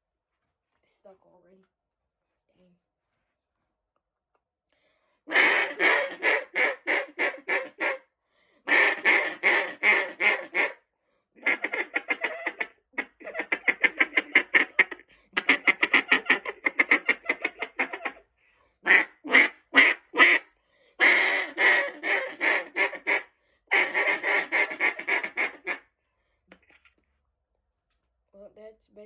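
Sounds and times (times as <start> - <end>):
duck call quacks: 5.3 - 8.0, 8.7 - 10.8, 11.4 - 18.2, 18.8 - 25.9.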